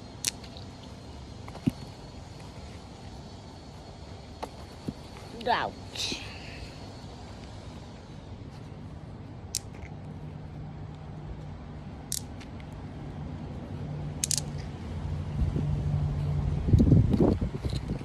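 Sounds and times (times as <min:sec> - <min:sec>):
magnetic balls clacking: 0:00.0 - 0:07.6, 0:09.4 - 0:10.3, 0:12.0 - 0:13.0, 0:14.1 - 0:14.8
steady low hum: 0:00.0 - 0:18.0.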